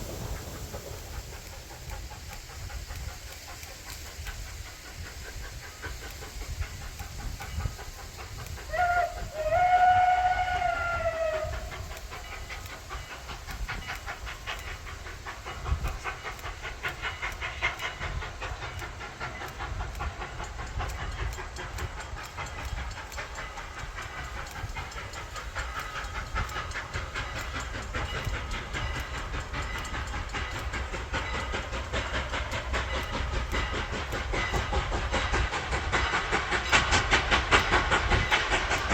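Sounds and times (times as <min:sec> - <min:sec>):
steam train clatter and rumble: 0:00.0 - 0:38.9
steam locomotive chime whistle: 0:07.5 - 0:15.0.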